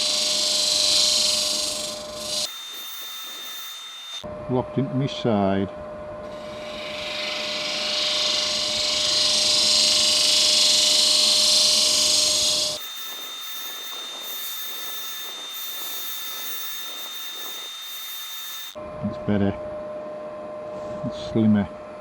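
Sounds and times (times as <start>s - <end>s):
lathe tool cutting wood: 0.0s - 4.3s, 6.3s - 18.8s
lathe running with thin whine: 0.0s - 5.3s, 6.2s - 18.8s.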